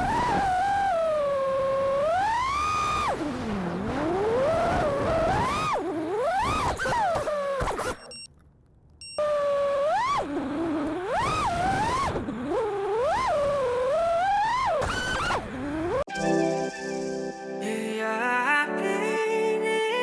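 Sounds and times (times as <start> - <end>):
quadcopter motors whining: 0.0 - 8.3, 9.0 - 16.1.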